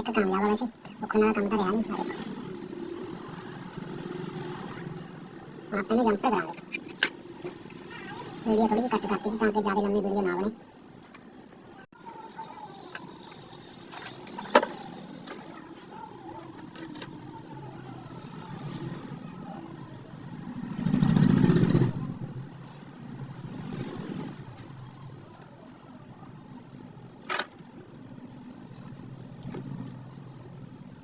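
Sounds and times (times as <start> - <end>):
vehicle passing: 0.0 - 9.1, 12.1 - 27.1
steady background noise: 0.0 - 31.0.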